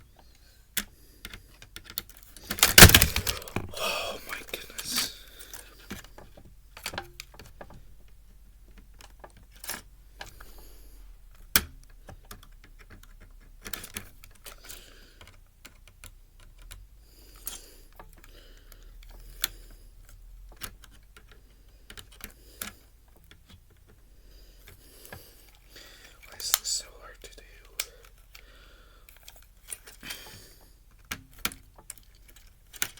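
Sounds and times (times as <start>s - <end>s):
plastic and metal parts clattering: 1.3s - 7.8s.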